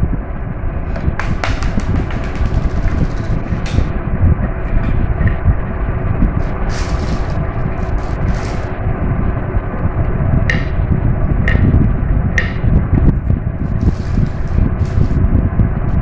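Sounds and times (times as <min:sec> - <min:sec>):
marbles rolling down a track: 0:01.2 - 0:03.9.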